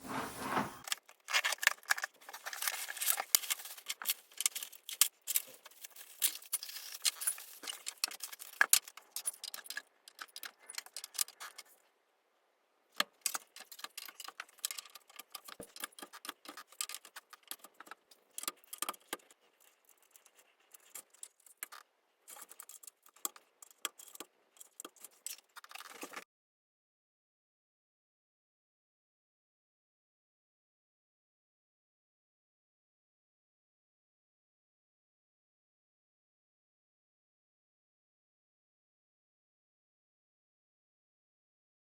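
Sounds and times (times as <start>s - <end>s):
rustling: 0.0s - 11.8s
hard pieces clicking and rattling: 0.8s - 11.8s, 13.0s - 26.2s.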